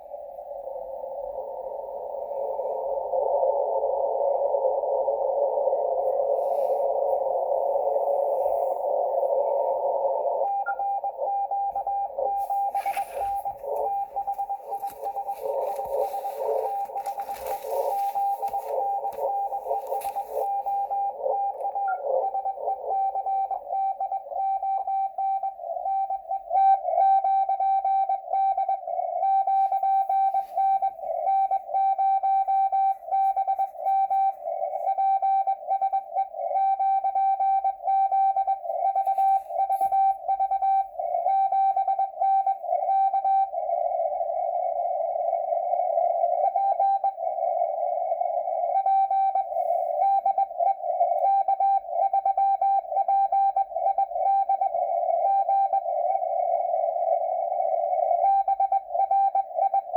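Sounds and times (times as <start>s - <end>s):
radio band hiss: 0.0s - 24.4s, 28.8s - 35.0s, 38.6s - 41.3s
weak blurred radio signals: 0.0s - 59.9s
morse code tone: 10.4s - 43.9s, 46.2s - 59.9s.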